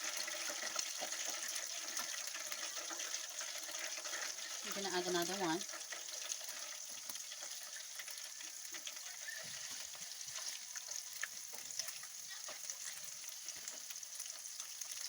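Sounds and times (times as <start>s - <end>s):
vegetables sizzling in hot oil: 0.0s - 15.0s.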